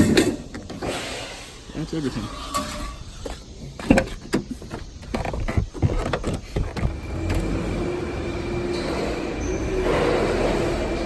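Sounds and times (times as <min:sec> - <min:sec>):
sharp knocks and clunks: 0:02.6 - 0:07.6.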